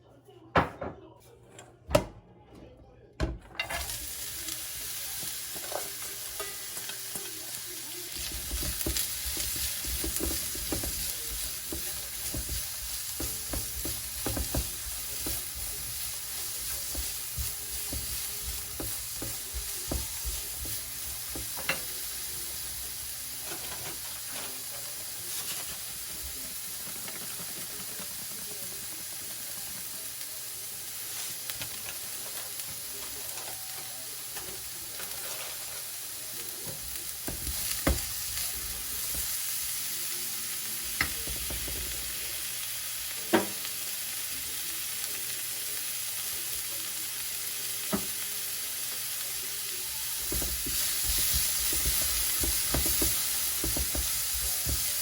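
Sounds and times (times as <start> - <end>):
food sizzling in a frying pan: 3.6 - 55.0
utensil knocking against pan: 8.2 - 21.8, 50.3 - 55.0.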